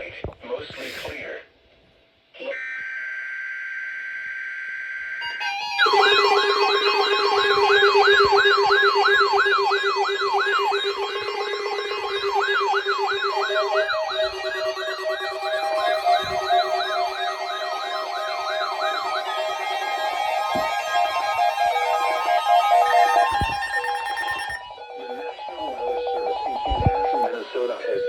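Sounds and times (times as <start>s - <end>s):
warbling siren-like alarm: 2.5s - 28.0s
steady electronic tone: 5.4s - 27.2s
pulsing beeps: 5.7s - 28.0s.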